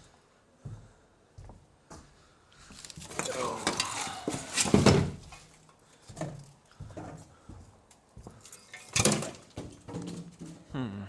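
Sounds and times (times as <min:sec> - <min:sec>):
junk scraping and clattering: 0:02.7 - 0:05.6, 0:08.5 - 0:10.6
knocks and scrapes: 0:02.7 - 0:05.6, 0:08.5 - 0:10.6.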